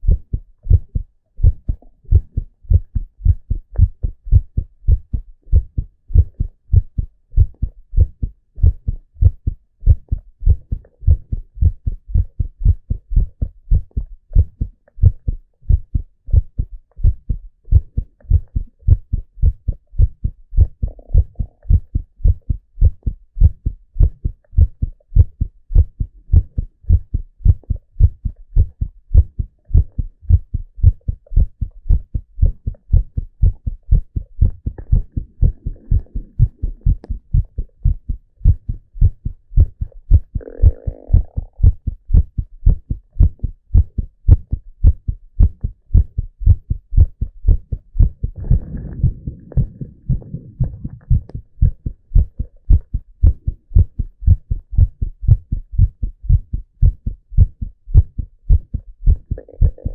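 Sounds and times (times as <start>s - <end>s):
heartbeat thumps: 0.0s - 59.9s.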